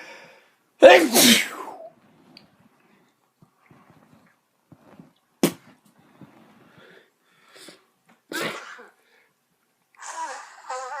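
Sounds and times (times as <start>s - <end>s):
loud sneeze: 0.8s - 1.9s, 8.3s - 9.0s.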